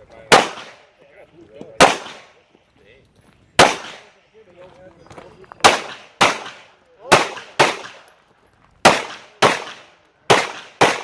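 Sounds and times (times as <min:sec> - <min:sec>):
pistol shots with echo: 0:00.3 - 0:00.9, 0:01.8 - 0:02.4, 0:03.6 - 0:04.2, 0:05.6 - 0:08.2, 0:08.8 - 0:11.0.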